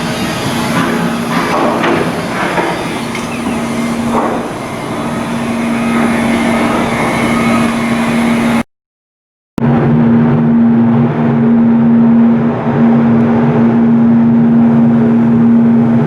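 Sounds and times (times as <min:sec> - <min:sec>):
loud machinery noise: 0:00.0 - 0:08.6, 0:09.6 - 0:16.0
faint knocks: 0:00.4 - 0:06.6.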